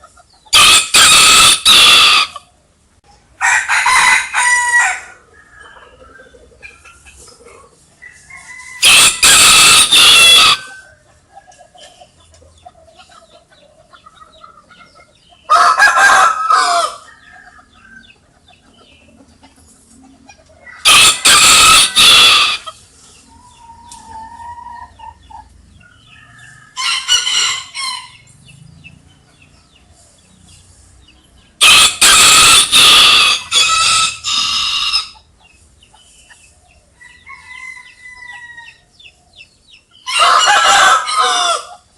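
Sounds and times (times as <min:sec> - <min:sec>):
hens clucking quietly: 0:00.0 - 0:41.9
rooster crowing: 0:00.5 - 0:02.4, 0:03.4 - 0:06.3, 0:08.0 - 0:11.1, 0:15.5 - 0:18.1, 0:20.6 - 0:22.8, 0:25.8 - 0:28.4, 0:31.6 - 0:35.2, 0:37.0 - 0:38.9, 0:40.0 - 0:41.8.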